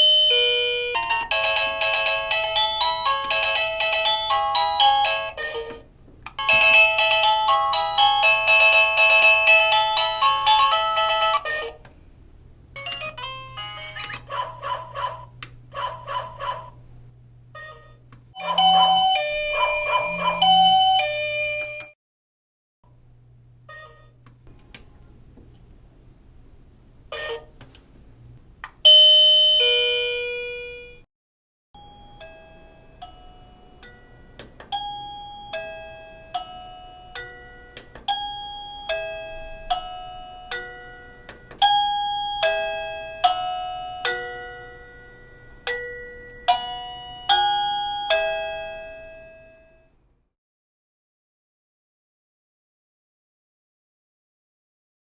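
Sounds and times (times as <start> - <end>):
electronic doorbell chime tunes: 0.0 - 5.8, 6.4 - 11.5, 18.4 - 22.0, 28.9 - 31.0, 31.8 - 49.9
ding-dong doorbell chime: 6.4 - 11.2, 18.4 - 21.9, 31.8 - 49.9.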